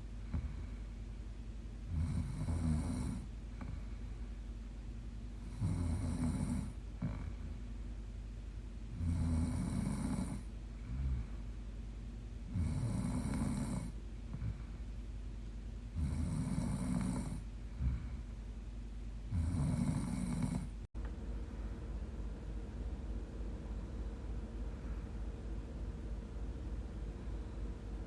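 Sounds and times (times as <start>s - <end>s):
woman snoring: 0.2s - 0.8s, 1.9s - 3.8s, 5.4s - 7.6s, 9.0s - 11.4s, 12.5s - 14.8s, 16.0s - 18.2s, 19.3s - 20.8s.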